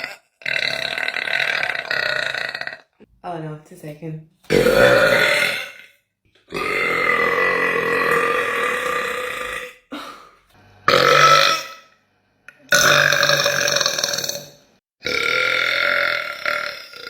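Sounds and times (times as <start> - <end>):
woman belching: 0.0 - 2.9, 4.5 - 5.9, 6.5 - 10.1, 10.9 - 11.8.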